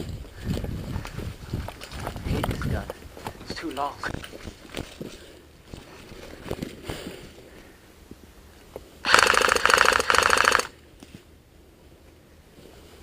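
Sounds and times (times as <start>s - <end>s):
airsoft rifle full-auto burst: 9.0s - 10.8s.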